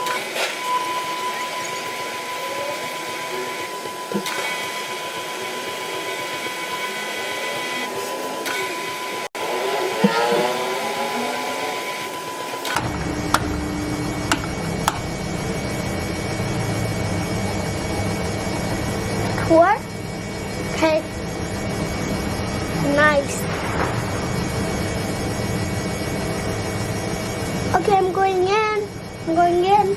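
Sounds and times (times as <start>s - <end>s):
sharp clicks: 12.7s - 15.2s
washing machine running: 12.7s - 15.4s.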